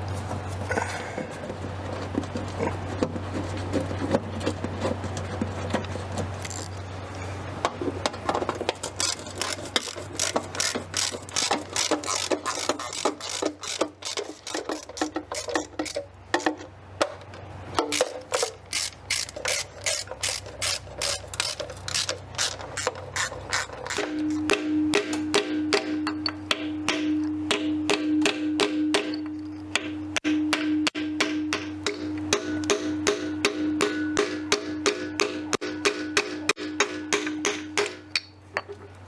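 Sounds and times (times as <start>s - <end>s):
steady low hum: 0.0s - 39.0s
ratchet wrench clicking: 6.4s - 6.8s, 8.8s - 16.5s, 17.9s - 24.4s.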